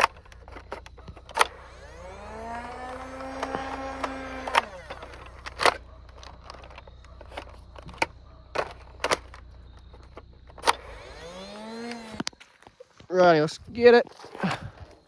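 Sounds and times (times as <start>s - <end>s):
sharp clicks and knocks: 0.0s - 12.8s
toy blaster motor whine: 1.2s - 5.8s, 10.6s - 12.4s.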